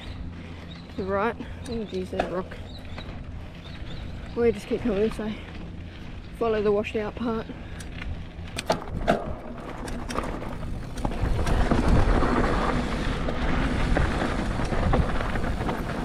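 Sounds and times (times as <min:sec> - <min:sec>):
bike tyre noise on trail: 0:00.0 - 0:16.0
wind rushing on microphone: 0:08.2 - 0:16.0
bike knocks and rattles: 0:08.4 - 0:16.0.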